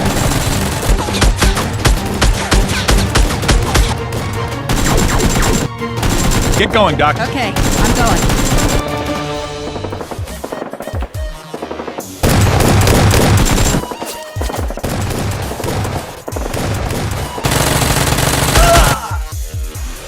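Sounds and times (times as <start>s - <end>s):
background music: 0.0s - 20.0s
automatic gunfire: 7.6s - 8.8s, 14.8s - 18.7s.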